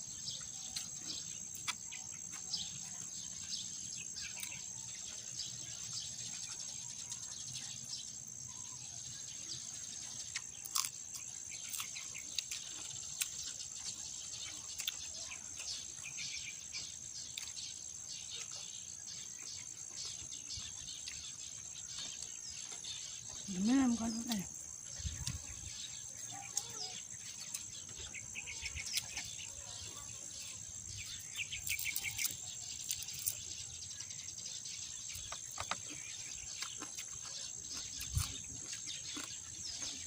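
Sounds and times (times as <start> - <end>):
crickets droning: 0.0 - 40.0.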